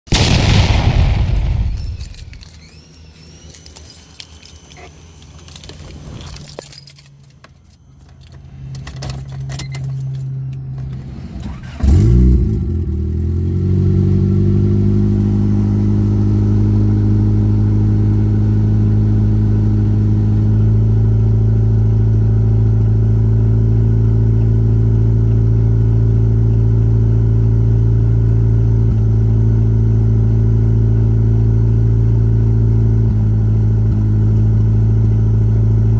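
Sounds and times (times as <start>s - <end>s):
car engine starting and idling: 0.1s - 35.9s
keys jangling: 1.7s - 10.4s.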